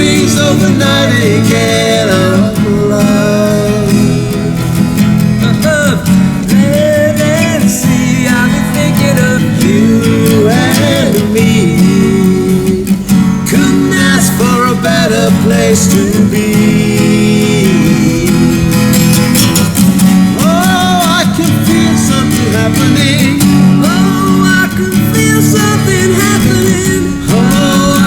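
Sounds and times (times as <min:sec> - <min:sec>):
acoustic guitar strumming: 0:00.0 - 0:28.0.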